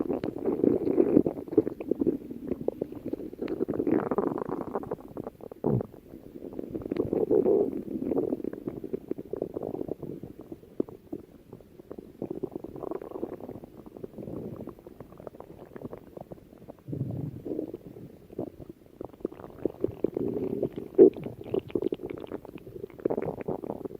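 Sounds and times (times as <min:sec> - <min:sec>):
stomach growling: 0:00.0 - 0:23.9.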